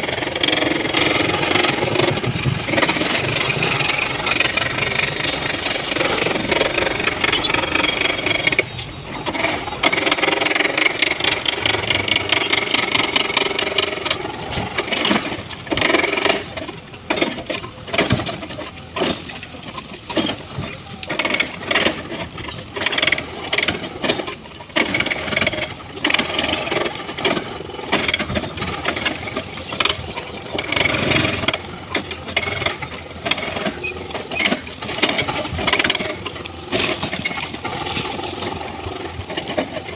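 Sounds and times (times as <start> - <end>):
diesel excavator engine running: 0.0 - 39.9
rocks knocking and rattling: 0.0 - 39.9.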